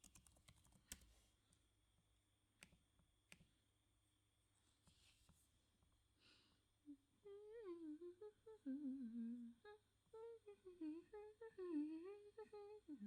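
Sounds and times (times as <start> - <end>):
woman humming: 6.9 - 13.0.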